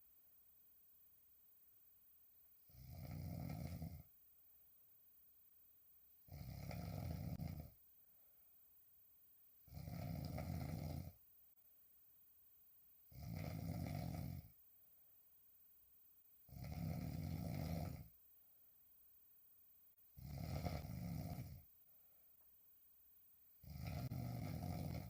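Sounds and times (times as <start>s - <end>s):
woman snoring: 2.7s - 4.1s, 6.3s - 7.8s, 9.7s - 11.2s, 13.1s - 14.6s, 16.5s - 18.2s, 20.2s - 21.7s, 23.6s - 25.0s.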